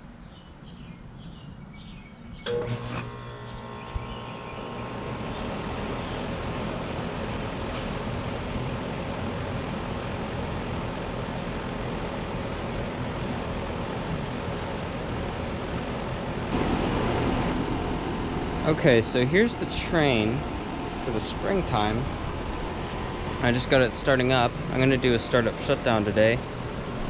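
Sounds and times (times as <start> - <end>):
air conditioner switching on clunk: 2.4 - 8.8, 16.2 - 27.0
compressor hum: 2.4 - 27.0
condenser fan air rush: 2.5 - 27.0.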